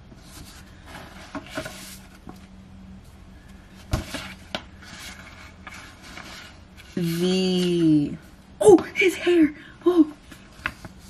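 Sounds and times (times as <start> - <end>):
paper pages rustling: 0.1 - 2.5, 3.9 - 7.9, 10.3 - 11.0.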